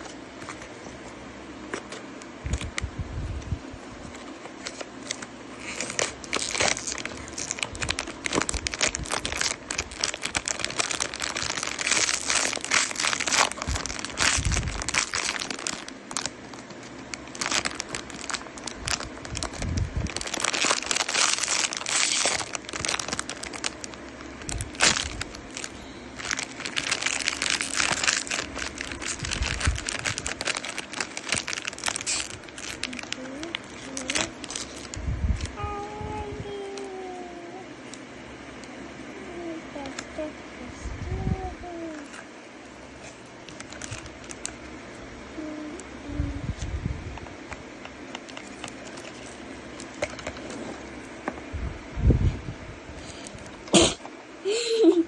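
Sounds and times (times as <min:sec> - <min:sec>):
wrapper crinkling: 0:04.6 - 0:35.6, 0:43.0 - 0:44.7, 0:48.1 - 0:50.9.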